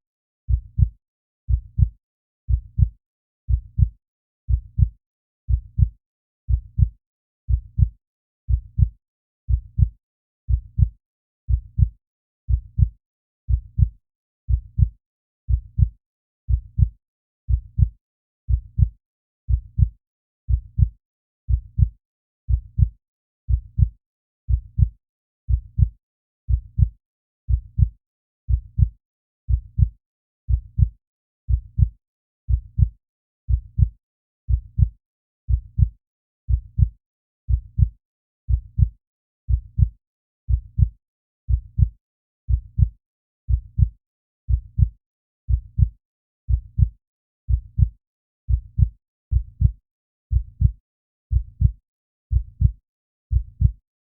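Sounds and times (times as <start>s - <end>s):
heartbeat thumps: 0.5s - 0.9s, 1.5s - 1.9s, 2.5s - 2.9s, 3.5s - 3.9s, 4.5s - 4.9s, 5.5s - 5.9s, 6.5s - 6.9s, 7.5s - 7.9s, 8.5s - 8.9s, 9.5s - 9.9s, 10.5s - 10.9s, 11.5s - 11.9s, 12.5s - 12.9s, 13.5s - 13.9s, 14.5s - 14.9s, 15.5s - 15.9s, 16.5s - 16.9s, 17.5s - 17.9s, 18.5s - 18.9s, 19.5s - 19.9s, 20.5s - 20.9s, 23.5s - 23.9s, 24.5s - 24.9s, 26.5s - 26.9s, 27.5s - 27.9s, 28.5s - 28.9s, 29.5s - 29.9s, 30.5s - 30.9s, 31.5s - 31.9s, 32.5s - 32.9s, 33.5s - 33.9s, 34.5s - 34.9s, 35.5s - 35.9s, 36.5s - 36.9s, 38.5s - 38.9s, 39.5s - 39.9s, 40.5s - 40.9s, 41.5s - 41.9s, 42.5s - 42.9s, 43.5s - 43.9s, 44.5s - 44.9s, 45.5s - 45.9s, 46.5s - 46.9s, 47.5s - 47.9s, 48.5s - 53.8s.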